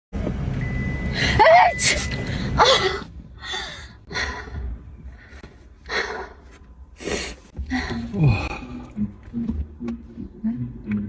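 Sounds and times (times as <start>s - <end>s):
person gasping breathily: 7.0s - 9.0s.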